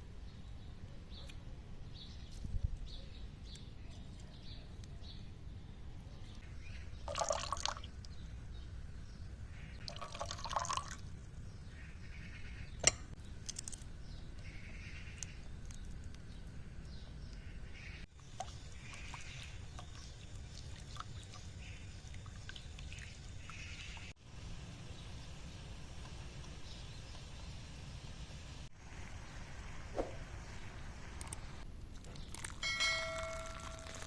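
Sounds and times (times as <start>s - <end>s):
liquid pouring: 7.1s - 7.9s, 9.8s - 11.1s, 18.2s - 24.1s, 32.2s - 34.0s.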